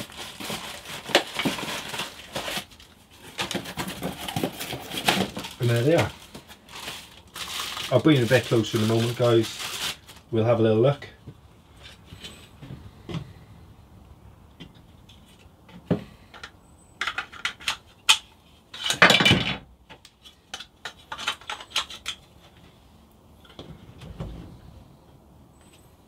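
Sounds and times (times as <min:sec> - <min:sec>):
rustling scrape: 0:00.0 - 0:10.3.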